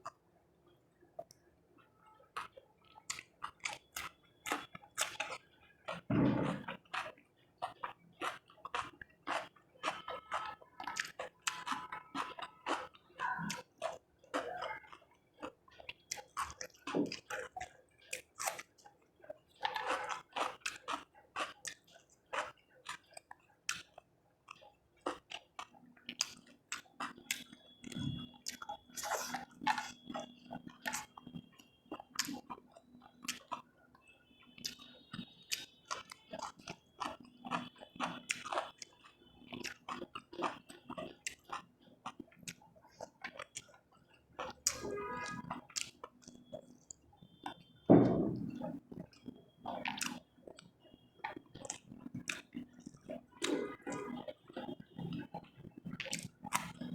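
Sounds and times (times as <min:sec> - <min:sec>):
person chewing crunchy food: 0:01.2 - 0:56.9
wet mouth clicks: 0:02.4 - 0:33.7, 0:34.6 - 0:47.8, 0:48.4 - 0:56.9.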